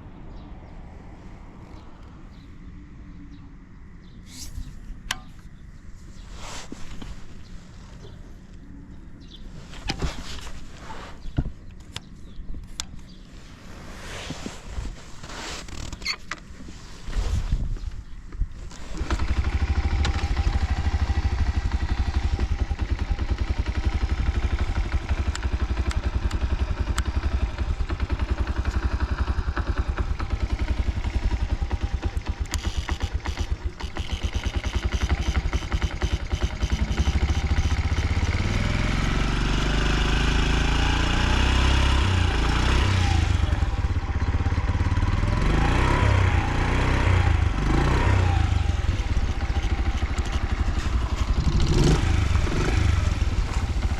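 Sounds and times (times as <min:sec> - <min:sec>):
small engine idling and revving: 0:18.7 - 0:53.9.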